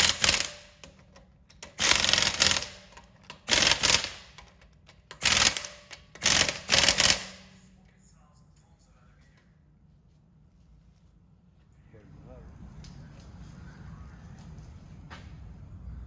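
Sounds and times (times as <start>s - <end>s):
pneumatic impact wrench rattling: 0.0s - 7.6s.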